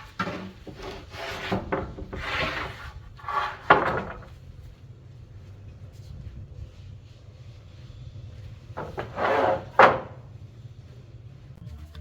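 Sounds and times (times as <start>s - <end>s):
wood scraping: 0.0s - 4.6s, 7.6s - 10.4s.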